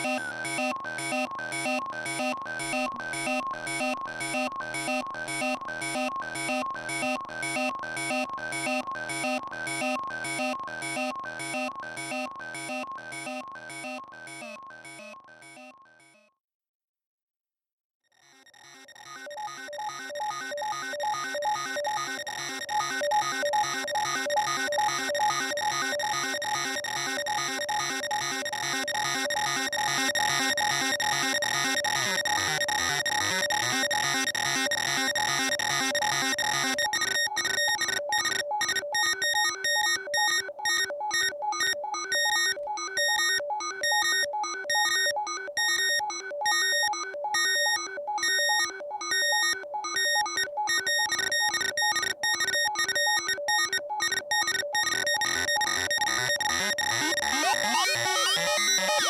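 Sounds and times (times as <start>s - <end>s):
electronic music with fast pulse: 50.3s - 59.0s.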